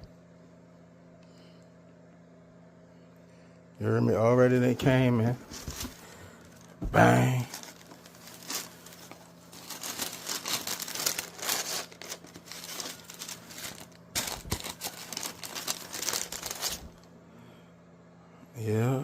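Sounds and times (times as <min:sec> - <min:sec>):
wrapping paper crinkling: 0:05.5 - 0:17.1.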